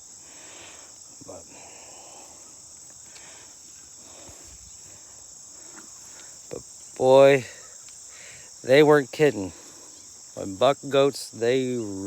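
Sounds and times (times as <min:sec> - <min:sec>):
insects chirping: 0:00.0 - 0:12.0.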